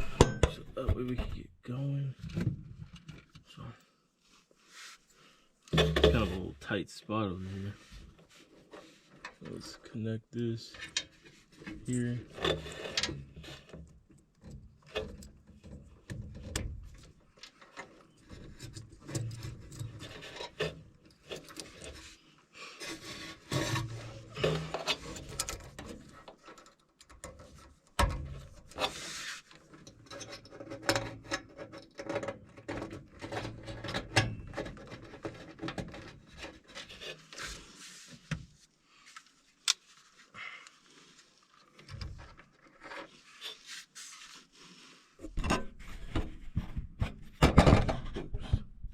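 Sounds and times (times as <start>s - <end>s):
hands rubbing and scraping: 43.0s - 45.2s.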